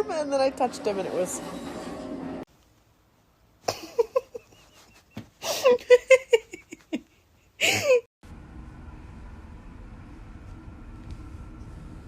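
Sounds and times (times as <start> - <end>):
person laughing: 3.7 - 8.1.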